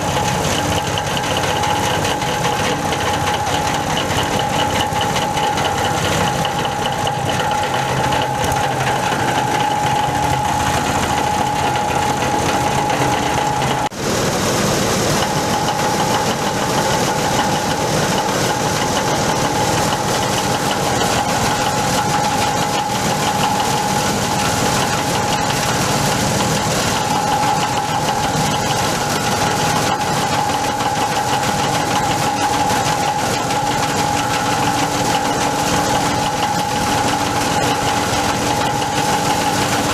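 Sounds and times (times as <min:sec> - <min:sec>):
shredder machine droning: 0:00.0 - 0:39.9.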